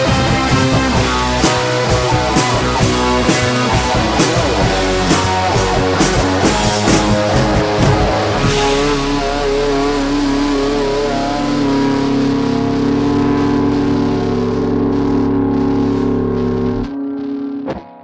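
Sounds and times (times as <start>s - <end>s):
drum kit with cymbal hits: 0.0s - 12.9s
guitar: 0.0s - 18.0s
keyboard: 0.0s - 18.0s.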